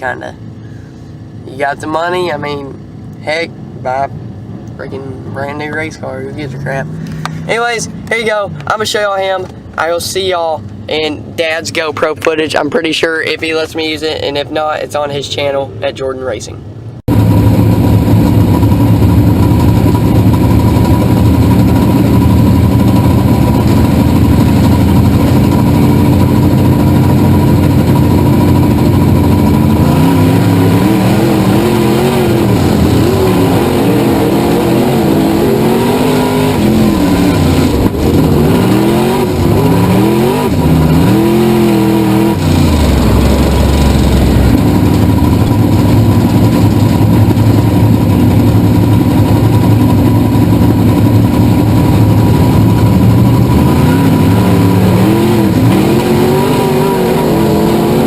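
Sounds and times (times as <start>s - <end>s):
race car engine revving: 17.1s - 58.0s.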